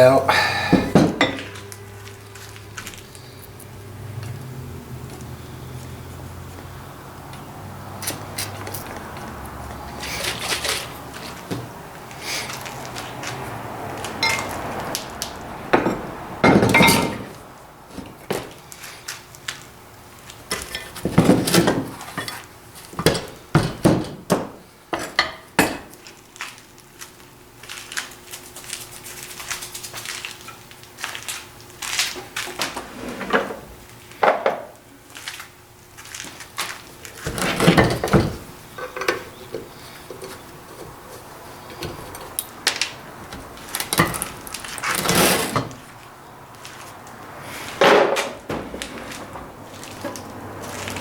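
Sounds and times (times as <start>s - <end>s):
metal clanks and knocks: 0.7s - 1.7s, 14.1s - 14.8s, 15.6s - 17.4s, 20.5s - 22.4s, 23.0s - 25.9s, 37.2s - 45.9s, 47.8s - 50.3s.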